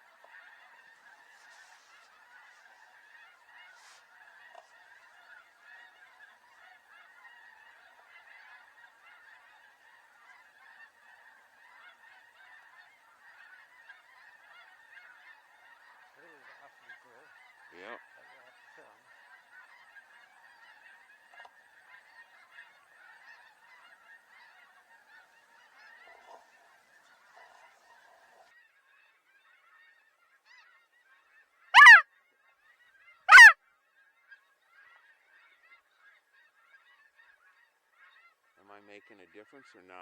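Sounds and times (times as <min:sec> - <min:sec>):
loud close goose honks: 0:00.0 - 0:26.7, 0:31.8 - 0:32.0, 0:33.3 - 0:33.6
distant geese honking: 0:00.0 - 0:28.5, 0:31.3 - 0:32.0, 0:33.3 - 0:33.6.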